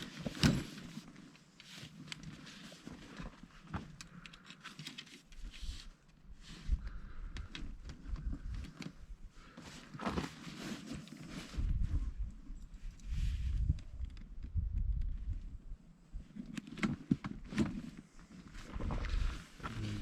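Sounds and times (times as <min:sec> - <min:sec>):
canvas fabric rustling: 0:09.4 - 0:12.2.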